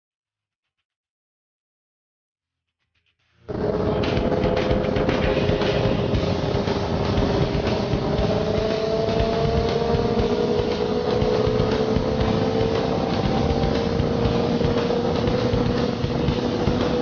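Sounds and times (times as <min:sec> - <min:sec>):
motorcycle engine accelerating: 0:03.4 - 0:17.0.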